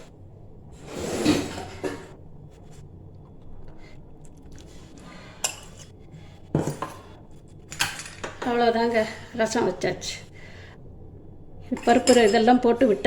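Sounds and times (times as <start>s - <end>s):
pots scraping and rustling: 0.8s - 2.8s
metal vessels clinking: 6.6s - 8.6s, 11.8s - 12.6s.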